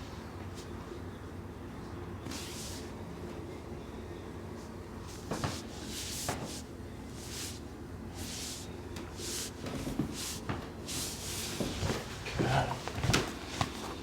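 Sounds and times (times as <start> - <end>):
soft rustling of clothing: 4.6 - 14.0.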